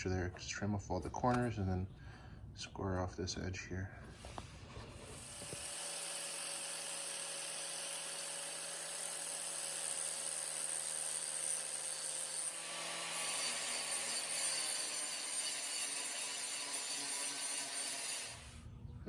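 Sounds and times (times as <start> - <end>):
grinder grinding steel: 4.9 - 18.6.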